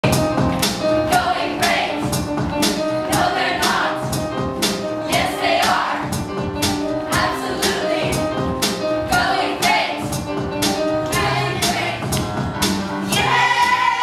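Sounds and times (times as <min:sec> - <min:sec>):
music with singing voices: 0:00.0 - 0:14.0.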